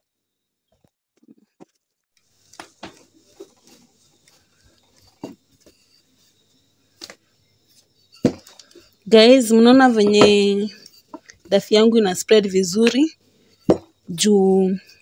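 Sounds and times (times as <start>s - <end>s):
rolling pin knocking on board: 10.0s - 10.5s, 13.7s - 13.9s.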